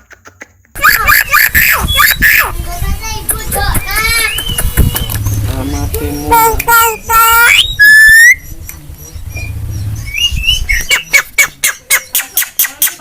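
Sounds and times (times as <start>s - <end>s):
bird squawking calls: 0.2s - 2.5s.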